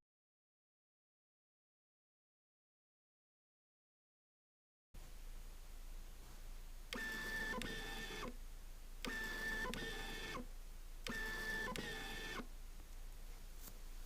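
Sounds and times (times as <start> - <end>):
autofocus motor whirring: 6.9 - 8.4, 9.0 - 12.5.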